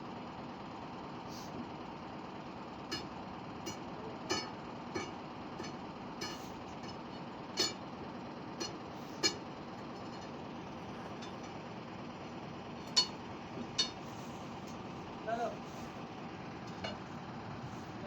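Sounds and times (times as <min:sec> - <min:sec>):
steady machine hum: 0:00.0 - 0:18.0
metal clinking on metal: 0:12.8 - 0:14.0.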